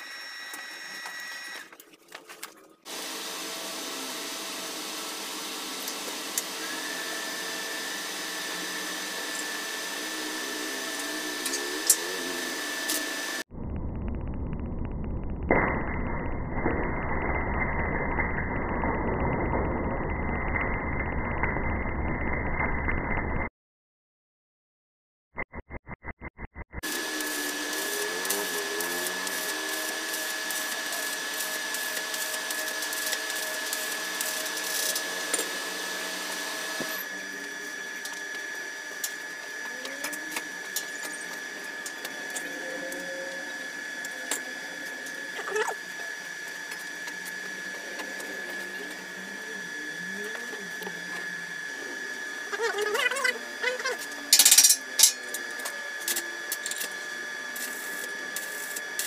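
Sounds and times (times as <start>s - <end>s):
arc welding crackling and hissing: 2.9s - 13.4s, 26.8s - 49.3s, 50.2s - 59.0s.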